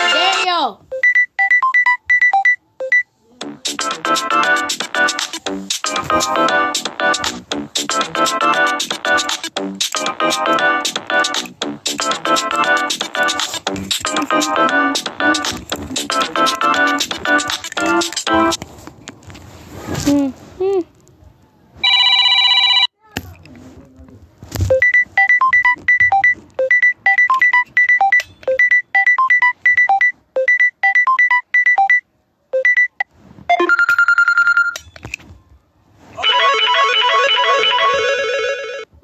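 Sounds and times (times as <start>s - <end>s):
phone ringtones: 0.0s - 3.1s, 21.8s - 22.9s, 24.7s - 34.9s, 36.2s - 38.9s.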